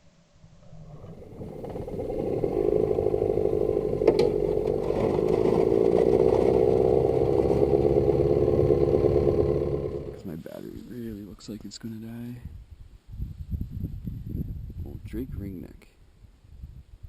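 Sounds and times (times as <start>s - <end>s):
small boat engine running: 0.8s - 10.2s.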